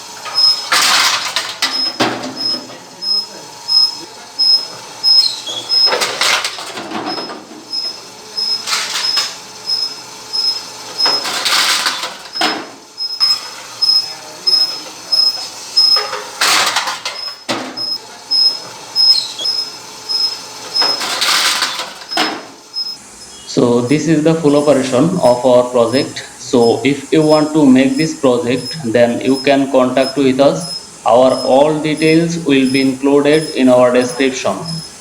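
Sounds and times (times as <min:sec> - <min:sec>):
mechanical sorting bursts: 0:00.0 - 0:35.0
bottles dropping into bins: 0:00.6 - 0:02.7, 0:20.8 - 0:22.5
high-pitched beep: 0:12.4 - 0:16.1, 0:23.9 - 0:34.9.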